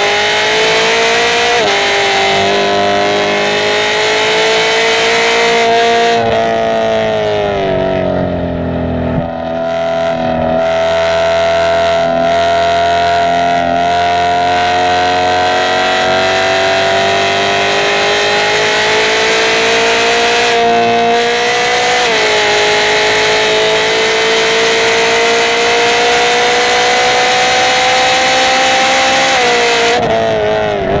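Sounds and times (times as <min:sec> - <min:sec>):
car engine at full throttle: 0:00.0 - 0:31.0
road noise: 0:00.0 - 0:31.0
wind noise: 0:29.4 - 0:31.0.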